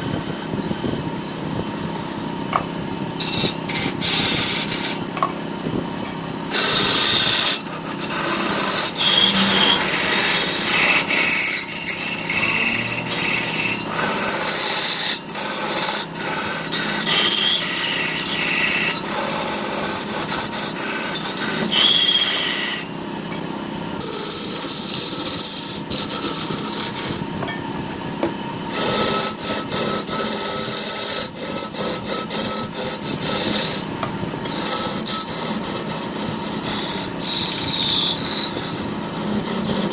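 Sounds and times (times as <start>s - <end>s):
lathe tool cutting spinning wood: 0.0s - 39.9s.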